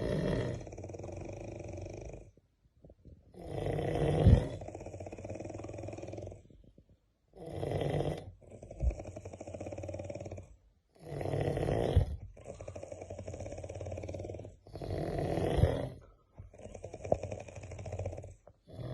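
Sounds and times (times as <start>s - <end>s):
person snoring loudly: 0.0s - 2.3s, 3.4s - 6.4s, 7.4s - 18.9s.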